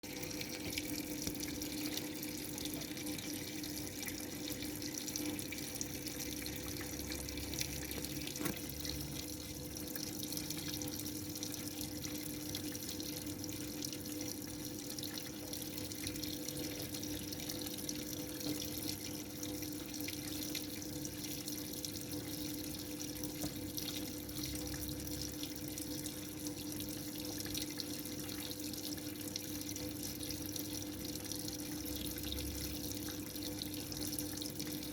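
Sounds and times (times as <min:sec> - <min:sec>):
washing machine low hum: 0:00.0 - 0:34.9.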